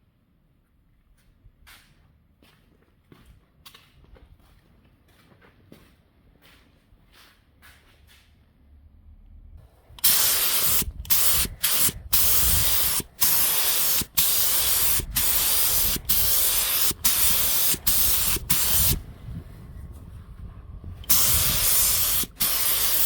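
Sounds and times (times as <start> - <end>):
paint spray gun hissing: 10.0 - 19.0, 21.0 - 23.0.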